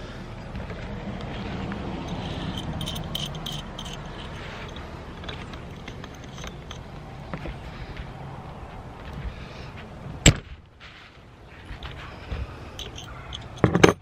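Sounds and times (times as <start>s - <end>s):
steady low rumble: 0.0s - 13.4s
small parts clicking and rattling: 1.4s - 6.9s, 12.8s - 14.0s.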